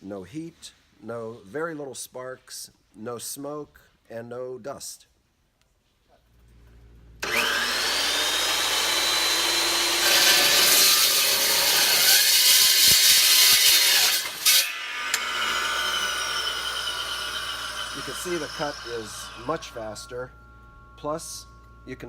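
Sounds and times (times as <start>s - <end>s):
metal cutting saw motor whine: 7.2s - 22.0s
saw blade grinding through steel: 7.2s - 22.0s.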